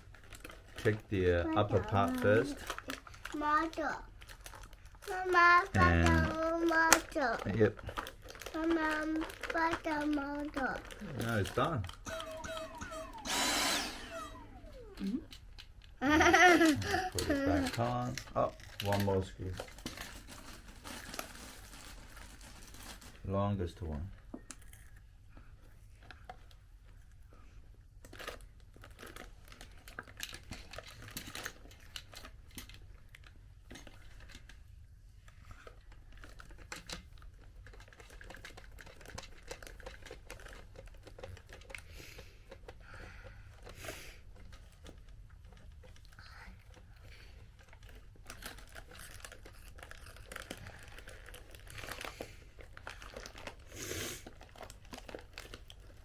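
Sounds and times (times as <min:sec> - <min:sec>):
screwdriver turning screw in plastic: 0:00.2 - 0:23.2, 0:28.0 - 0:34.6, 0:35.5 - 0:56.0
plastic parts handled: 0:05.8 - 0:25.0, 0:35.3 - 0:56.0.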